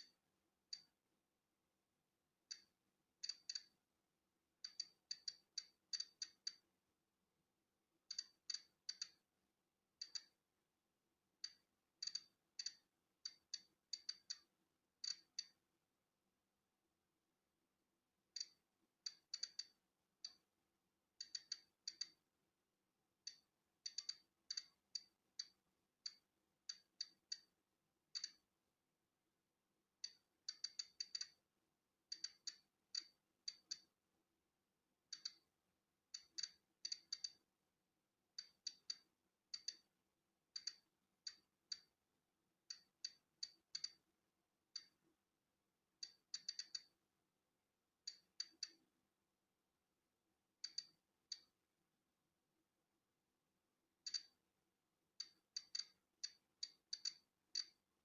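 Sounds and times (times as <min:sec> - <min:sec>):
geiger counter clicking: 0:02.5 - 0:03.8, 0:04.6 - 0:06.7, 0:08.1 - 0:09.2, 0:10.0 - 0:10.4, 0:11.4 - 0:15.6, 0:18.4 - 0:20.4, 0:21.2 - 0:22.2, 0:23.3 - 0:27.5, 0:28.1 - 0:28.4, 0:30.0 - 0:31.4, 0:32.1 - 0:33.9, 0:35.1 - 0:35.4, 0:36.1 - 0:37.4, 0:38.4 - 0:39.9, 0:40.5 - 0:41.9, 0:42.7 - 0:44.0, 0:46.0 - 0:47.0, 0:48.1 - 0:48.8, 0:50.6 - 0:51.5, 0:54.0 - 0:54.4, 0:55.2 - 0:57.8.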